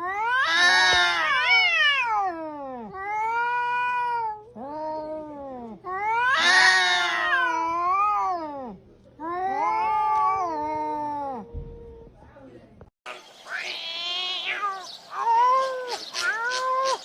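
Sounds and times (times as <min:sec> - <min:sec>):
cat yowling meows: 0:00.0 - 0:08.6, 0:13.5 - 0:17.0.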